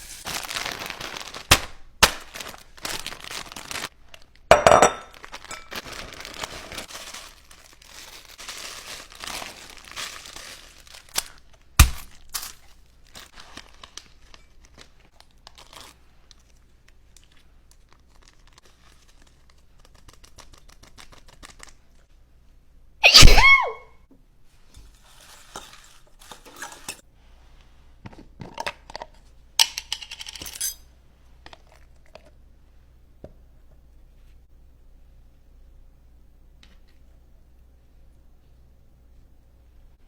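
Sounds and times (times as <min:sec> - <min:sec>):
crinkling: 0:00.0 - 0:22.1
person sneezing: 0:23.0 - 0:23.9.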